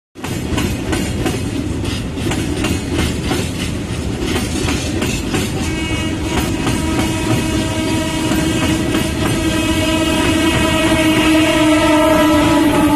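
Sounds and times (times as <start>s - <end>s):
train wheels clacking over rail joints: 0.2s - 12.9s
locomotive horn: 5.5s - 12.9s.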